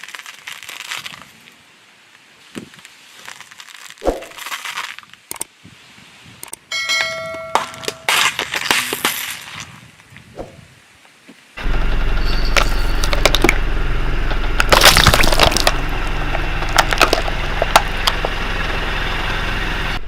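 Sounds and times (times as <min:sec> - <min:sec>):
objects crushed crackling: 0:00.0 - 0:05.4, 0:07.6 - 0:10.1, 0:12.2 - 0:18.5
bell-like ringing tone: 0:06.7 - 0:08.1, 0:12.1 - 0:13.1.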